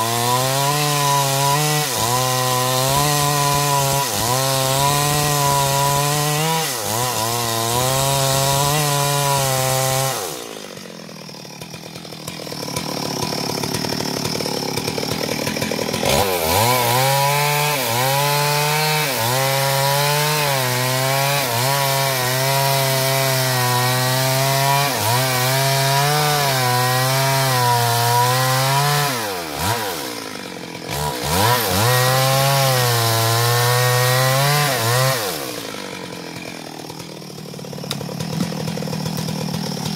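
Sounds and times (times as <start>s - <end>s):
chainsaw cutting wood: 0.0s - 39.9s.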